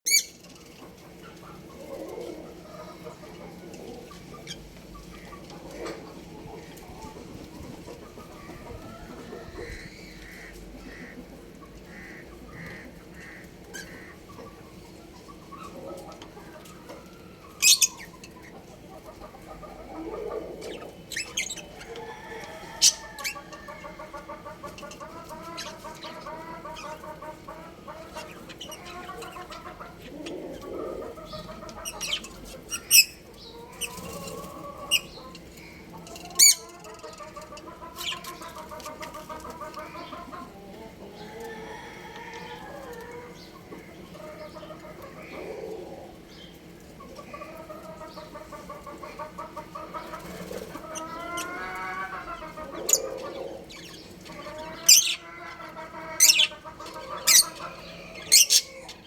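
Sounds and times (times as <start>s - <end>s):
budgerigars chattering: 0.1s - 0.4s, 17.5s - 22.1s, 22.7s - 41.4s, 47.0s - 59.0s
budgerigars chirping: 0.1s - 0.4s, 17.6s - 18.6s, 19.2s - 22.0s, 22.8s - 30.4s, 31.2s - 40.4s, 48.0s - 59.0s.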